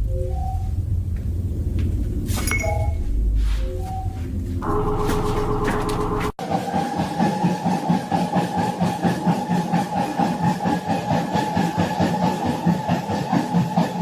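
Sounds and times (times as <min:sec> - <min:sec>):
steady whine: 0:03.0 - 0:06.4
machine engine running: 0:04.4 - 0:06.4.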